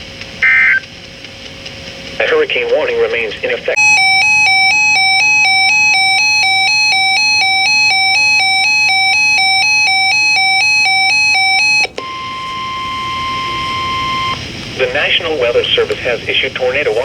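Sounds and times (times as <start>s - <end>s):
steady alarm tone: 0.4s - 0.8s, 3.8s - 15.6s
two-pitch electronic beep: 3.8s - 14.4s.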